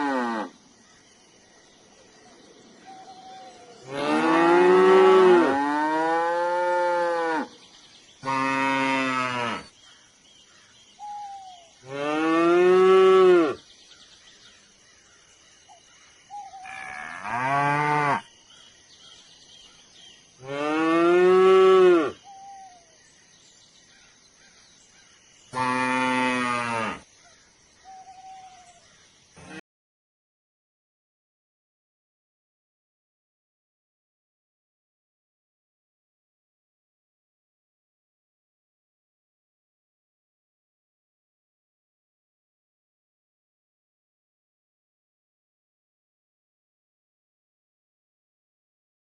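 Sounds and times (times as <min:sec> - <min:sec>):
cattle mooing: 0:03.8 - 0:07.5.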